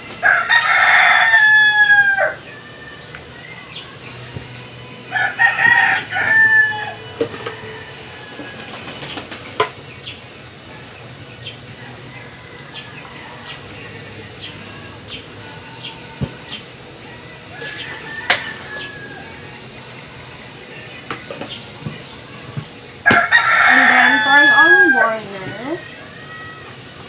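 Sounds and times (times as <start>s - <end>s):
rooster crowing: 0.2s - 3.0s, 5.1s - 8.9s, 11.8s - 13.6s, 17.5s - 19.6s, 23.0s - 25.2s.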